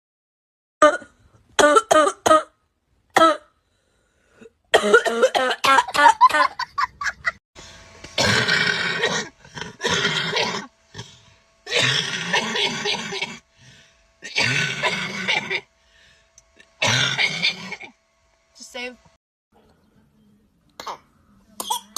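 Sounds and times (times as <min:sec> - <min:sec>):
people coughing: 0:04.7 - 0:06.5, 0:08.2 - 0:10.7, 0:11.7 - 0:13.4, 0:14.2 - 0:15.7, 0:16.8 - 0:17.9, 0:20.8 - 0:21.9.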